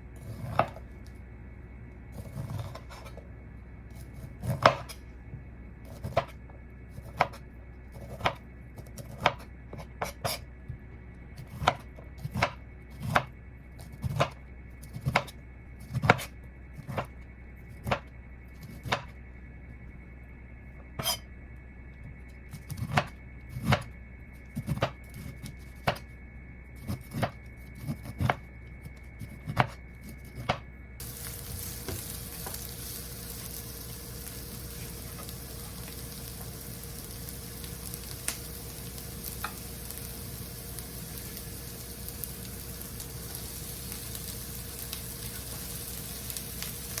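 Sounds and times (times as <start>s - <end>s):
knife chopping on cutting board: 4.4s - 5.0s, 24.6s - 26.0s, 29.4s - 29.8s
food sizzling in a pan: 31.0s - 47.0s.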